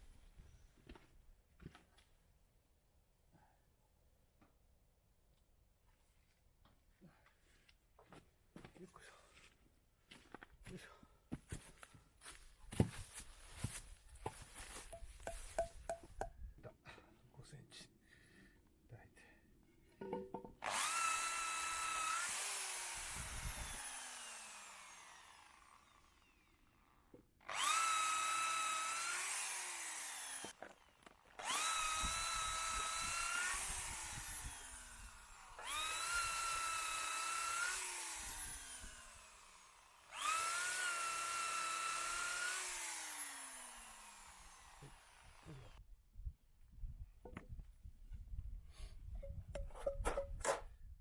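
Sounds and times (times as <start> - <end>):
electric drill boring into wood: 20.6 - 45.8.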